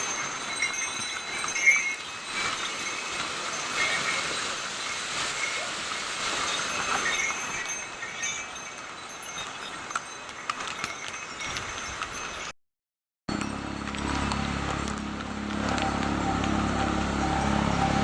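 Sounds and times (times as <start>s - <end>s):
small bells jingling: 0.0s - 12.6s, 13.3s - 16.1s.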